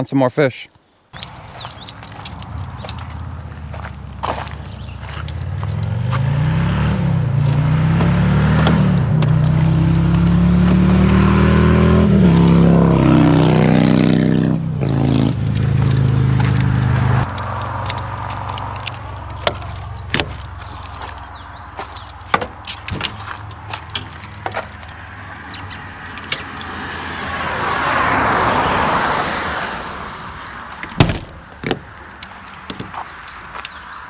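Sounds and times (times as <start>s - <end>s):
car passing: 1.2s - 34.0s
low engine hum: 1.2s - 34.0s
clicks and light knocks: 15.5s - 27.2s.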